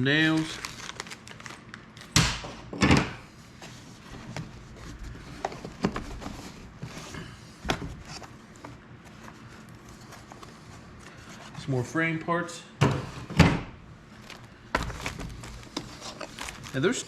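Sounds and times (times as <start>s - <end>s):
rubbing and rustling: 3.4s - 11.8s, 14.1s - 17.0s.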